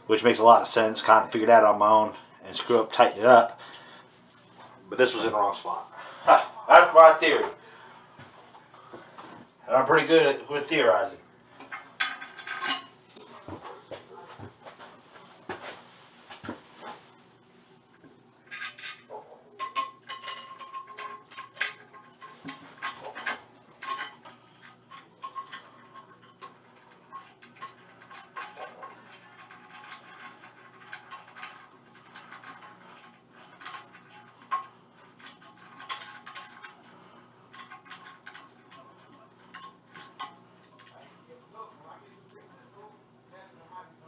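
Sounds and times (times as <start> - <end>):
metal hardware clinking and scraping: 0.6 - 5.2, 11.6 - 17.1, 18.4 - 41.3.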